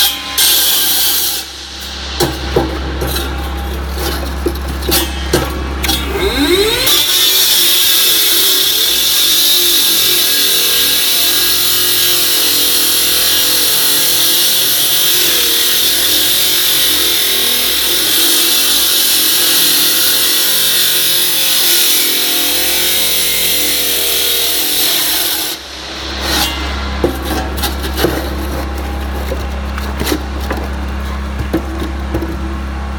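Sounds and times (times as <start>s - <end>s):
concrete saw cutting concrete: 5.8s - 32.6s
scattered knocks: 28.0s - 32.6s.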